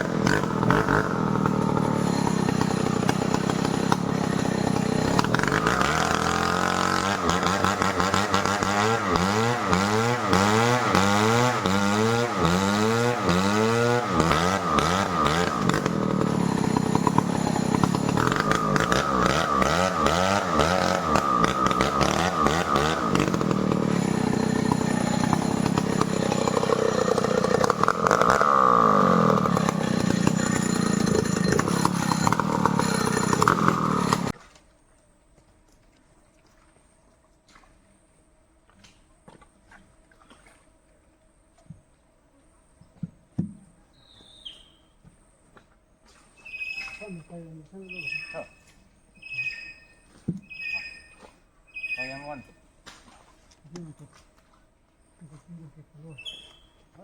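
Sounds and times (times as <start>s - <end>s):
chainsaw cutting timber: 0.0s - 34.4s.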